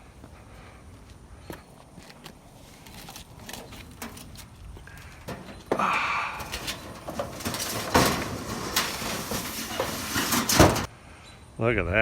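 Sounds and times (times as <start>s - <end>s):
shelving unit scraping: 2.7s - 10.9s.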